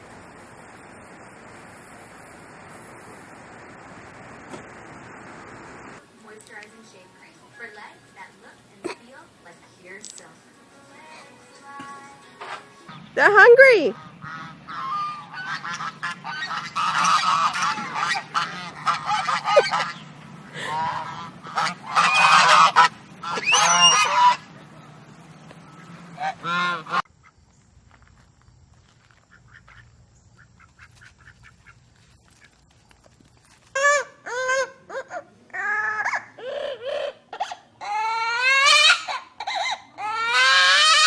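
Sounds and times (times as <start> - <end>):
geese honking: 12.4 - 27.1, 33.7 - 41.0.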